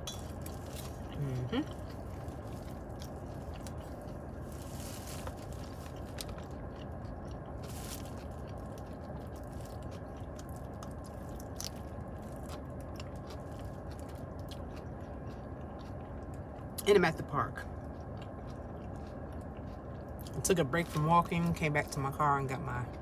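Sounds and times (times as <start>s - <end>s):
chewing crunchy salad: 0.0s - 23.0s
low background hum: 0.0s - 23.0s.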